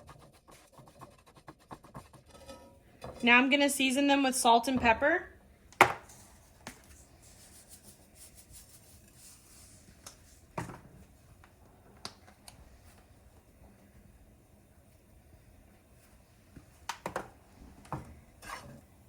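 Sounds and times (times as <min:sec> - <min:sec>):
soft rustle of seasoning: 0:06.1 - 0:10.6.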